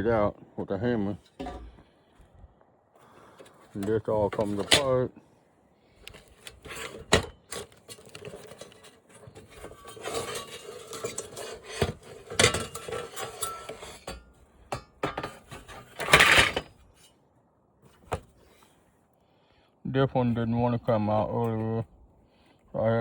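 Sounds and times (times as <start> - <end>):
metal scraping clatter: 1.2 - 1.8, 6.0 - 17.1.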